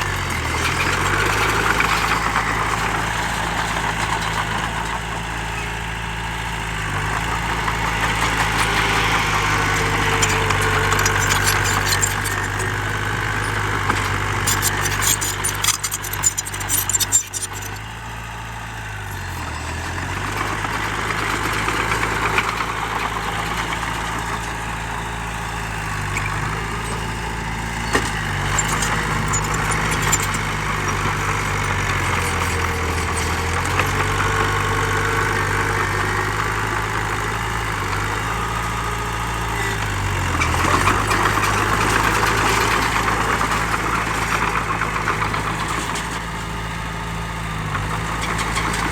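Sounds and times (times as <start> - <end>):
heavy diesel engine running: 0.0 - 48.9
rattling and clanking: 7.1 - 17.9, 25.6 - 36.0.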